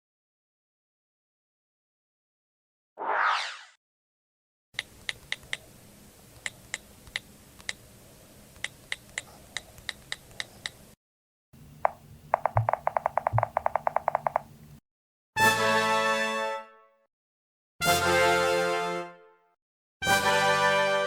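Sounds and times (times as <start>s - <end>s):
rapid run of clicks: 11.9s - 14.5s.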